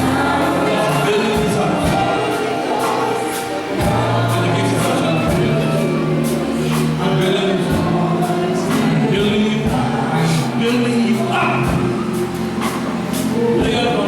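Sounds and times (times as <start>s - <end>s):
band with bass and percussion: 0.0s - 14.0s
choir singing gospel: 0.0s - 14.0s.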